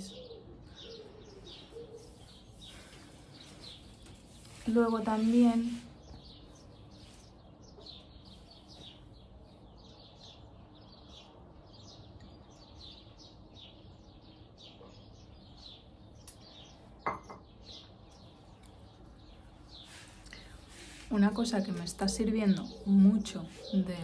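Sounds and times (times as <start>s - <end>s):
small birds chirping: 0.0s - 24.0s.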